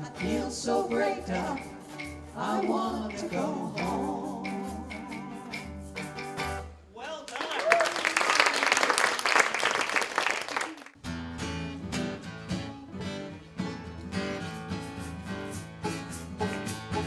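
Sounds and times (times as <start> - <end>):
acoustic guitars strumming: 0.0 - 6.9, 11.0 - 17.0
applause: 7.1 - 11.0.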